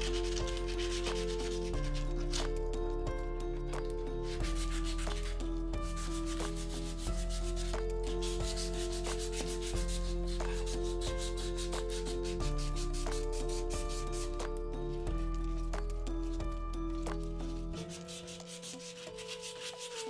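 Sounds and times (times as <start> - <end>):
abrasive sanding: 0.0 - 2.5, 4.3 - 14.5, 17.0 - 20.0
background music: 0.0 - 20.0.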